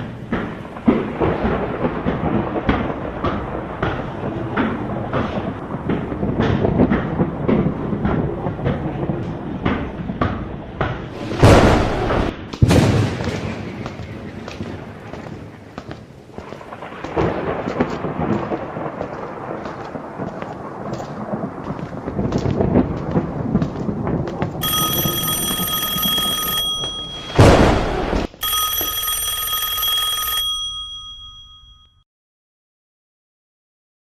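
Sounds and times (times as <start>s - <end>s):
loud thunderclap: 0.0s - 15.7s, 16.6s - 24.6s, 27.4s - 28.3s
thunder rumbling: 0.0s - 28.4s
high bell-like ringing: 24.6s - 32.0s.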